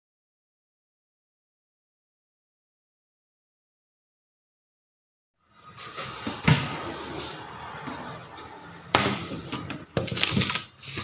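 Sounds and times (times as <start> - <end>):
room noise: 5.4 - 11.0
sharp knocks and thuds: 8.9 - 10.1.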